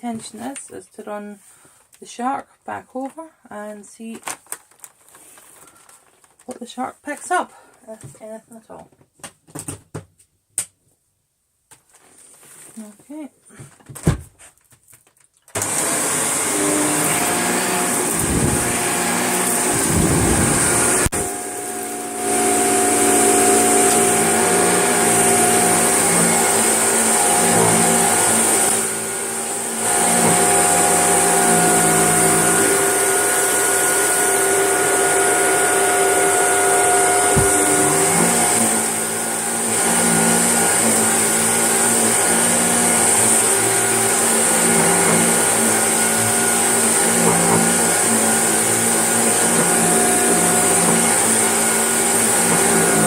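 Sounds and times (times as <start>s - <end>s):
vacuum cleaner motor whine: 15.5s - 53.0s.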